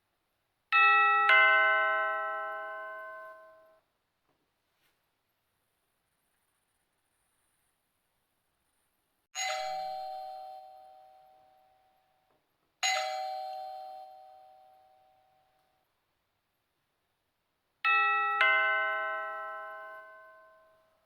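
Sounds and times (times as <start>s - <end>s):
doorbell chime: 0.8s - 3.8s, 9.4s - 15.6s, 17.9s - 21.0s.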